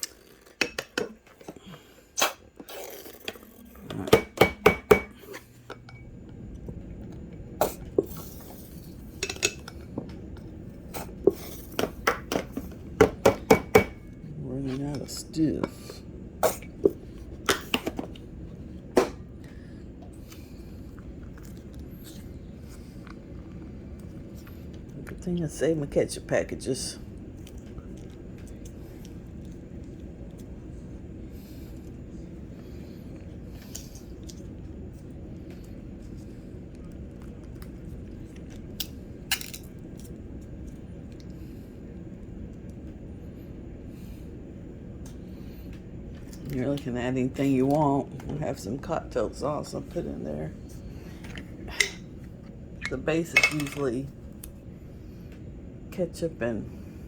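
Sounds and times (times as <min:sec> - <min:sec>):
low background hum: 0:00.0 - 0:57.0
kitchen handling rustles: 0:52.8 - 0:54.0.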